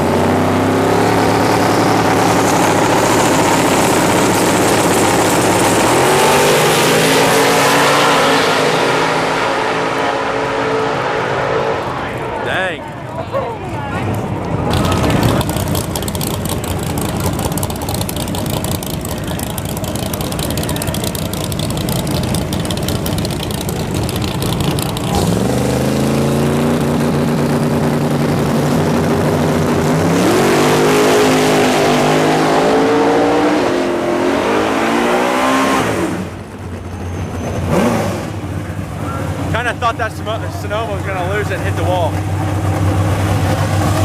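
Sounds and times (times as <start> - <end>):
race cars rumbling: 0.0 - 44.0
race car engine shifting gears: 14.1 - 29.2.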